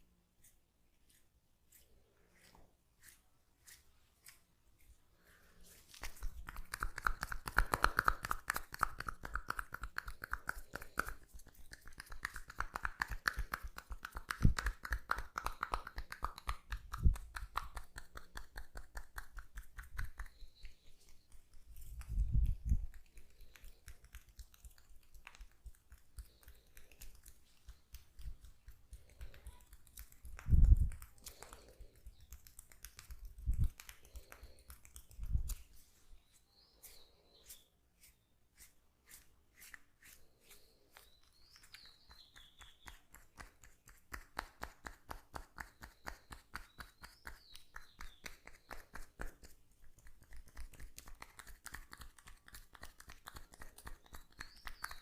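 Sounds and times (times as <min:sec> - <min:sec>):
wet clicking of oily skin: 0:05.9 - 0:35.8, 0:39.2 - 0:55.0.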